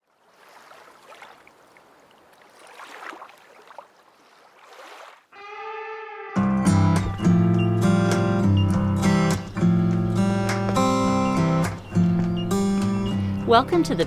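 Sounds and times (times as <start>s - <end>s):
seawater lapping: 0.0s - 6.1s, 7.0s - 14.0s
strummed guitar music: 5.8s - 14.0s.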